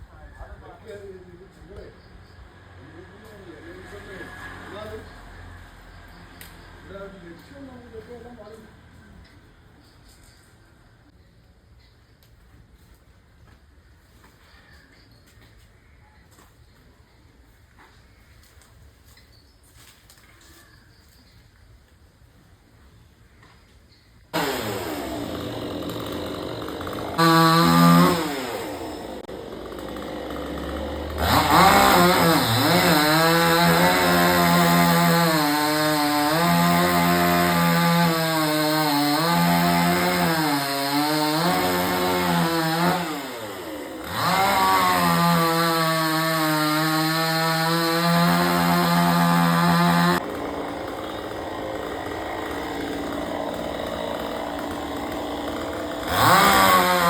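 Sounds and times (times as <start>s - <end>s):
chainsaw cutting wood: 24.3s - 57.0s.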